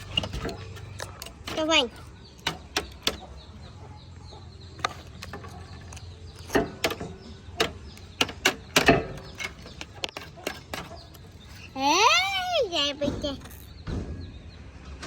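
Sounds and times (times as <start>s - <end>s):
sharp clicks and knocks: 0.0s - 3.8s, 4.7s - 12.2s.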